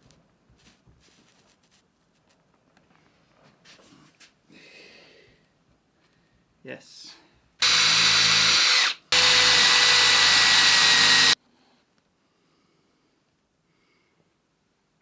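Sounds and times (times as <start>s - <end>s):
power tool cutting wood: 7.6s - 11.4s.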